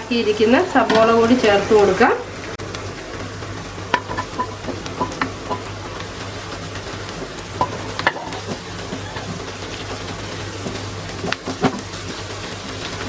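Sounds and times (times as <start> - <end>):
onions sizzling in oil: 0.0 - 13.0.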